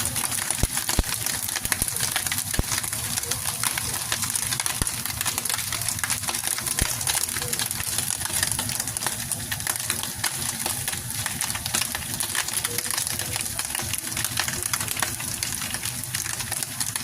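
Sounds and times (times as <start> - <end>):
bacon sizzling in a frying pan: 0.0 - 17.0.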